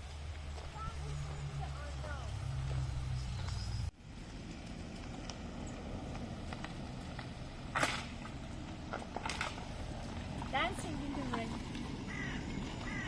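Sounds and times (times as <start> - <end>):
steady rain: 0.0 - 7.7.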